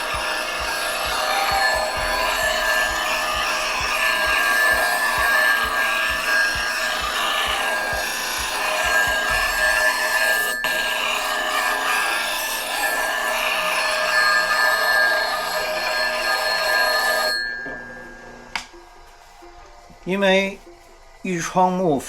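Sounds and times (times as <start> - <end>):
gouge scraping on sharpener: 0.0 - 17.6
soft rhythmic strokes: 0.0 - 22.0.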